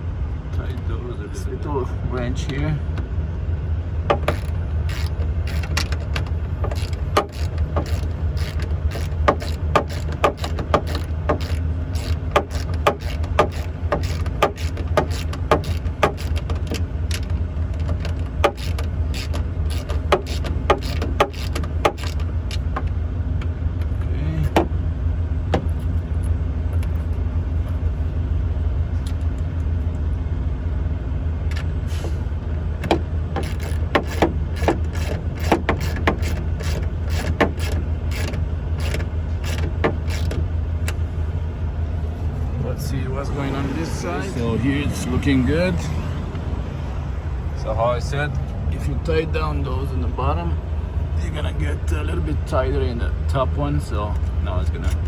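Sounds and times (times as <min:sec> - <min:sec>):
low engine drone: 0:00.0 - 0:55.0
wrench clicking on metal: 0:04.1 - 0:17.3, 0:18.0 - 0:22.6, 0:33.4 - 0:41.0.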